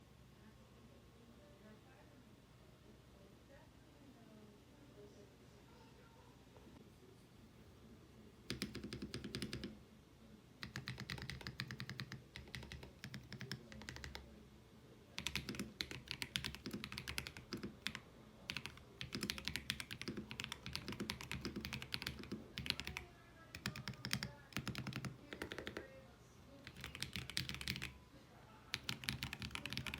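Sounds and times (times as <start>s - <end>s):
mechanical keyboard typing: 8.5s - 9.8s, 10.6s - 14.3s, 15.2s - 25.9s, 26.6s - 28.0s, 28.7s - 29.9s.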